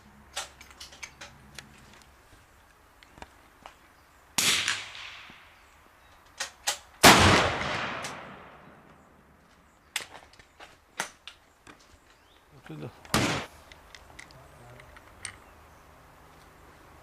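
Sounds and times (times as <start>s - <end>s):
echoing rifle shots: 4.4s - 5.5s, 7.0s - 8.9s, 13.1s - 13.5s.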